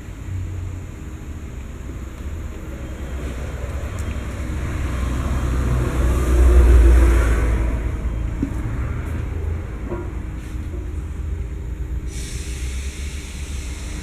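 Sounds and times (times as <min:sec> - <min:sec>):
vehicle passing by: 0:01.9 - 0:11.8.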